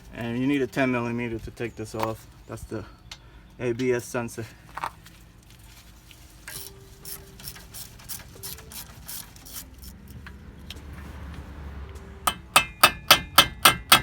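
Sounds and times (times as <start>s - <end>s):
hand ratchet clicking: 6.5s - 10.2s
metal-on-metal strikes: 12.2s - 14.0s.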